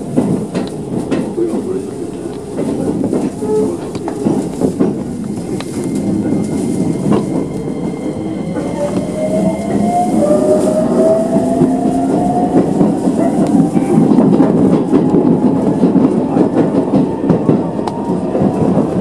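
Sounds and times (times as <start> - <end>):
electric train rumbling on rails: 0.0 - 19.0.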